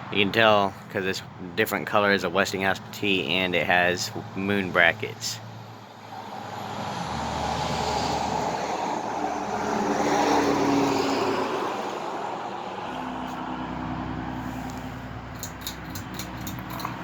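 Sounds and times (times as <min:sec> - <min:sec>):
vehicle driving past: 0:05.6 - 0:15.4.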